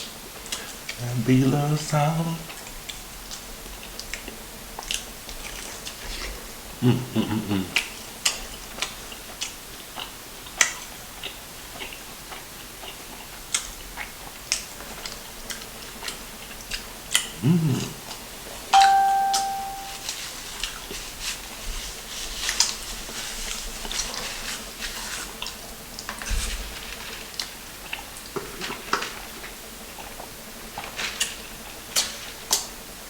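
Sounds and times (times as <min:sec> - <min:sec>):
low vocal sounds: 0:01.0 - 0:02.5, 0:06.8 - 0:07.9, 0:17.4 - 0:18.1
chime-like ringing tone: 0:18.8 - 0:20.0.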